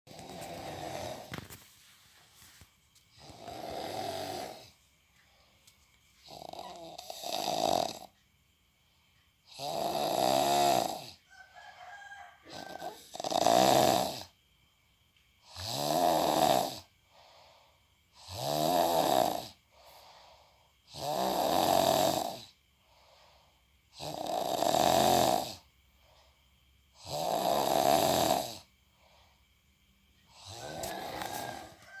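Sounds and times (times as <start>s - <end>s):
person snoring loudly: 0.1s - 1.5s, 3.2s - 4.8s, 6.2s - 8.1s, 9.5s - 11.2s, 12.4s - 14.4s, 15.4s - 16.9s, 18.2s - 19.6s, 20.9s - 22.6s, 23.9s - 25.7s, 27.0s - 28.7s, 30.3s - 31.8s
quiet breaths: 0.1s - 32.0s.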